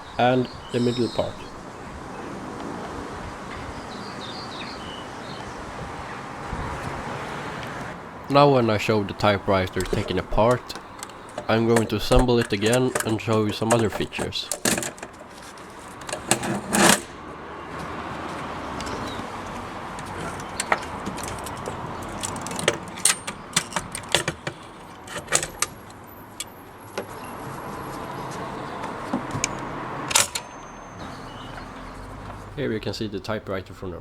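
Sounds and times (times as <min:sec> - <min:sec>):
typewriter parts clicking and clunking: 0:09.1 - 0:17.2, 0:20.0 - 0:26.5, 0:28.8 - 0:30.6.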